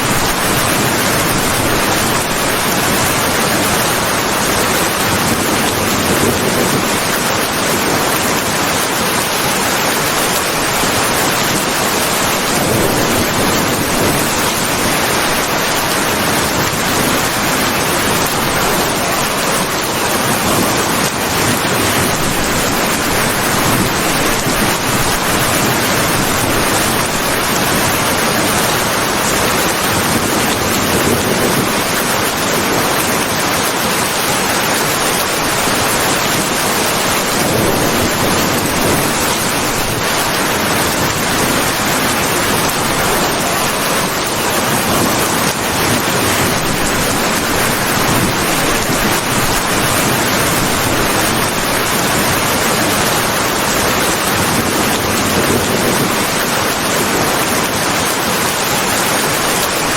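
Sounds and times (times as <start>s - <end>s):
heavy rain: 0.0s - 59.9s.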